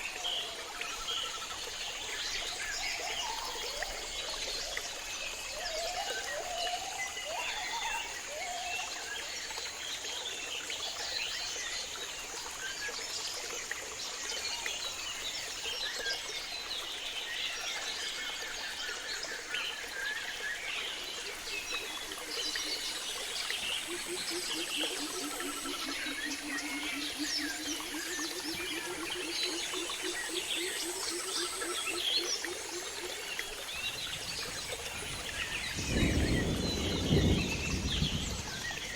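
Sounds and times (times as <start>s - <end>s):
running river water: 0.0s - 38.9s.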